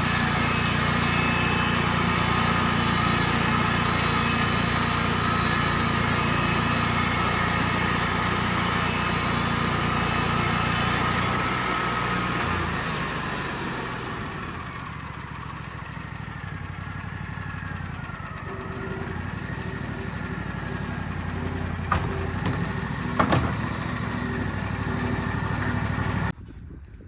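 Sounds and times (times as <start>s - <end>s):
sawmill engine running: 0.0s - 26.4s
sharp knocks: 20.8s - 25.8s.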